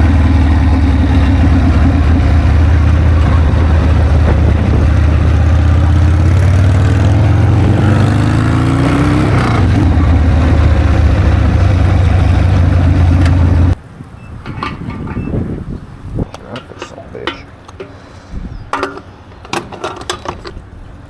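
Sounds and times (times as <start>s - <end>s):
motorcycle engine running: 0.0s - 13.8s.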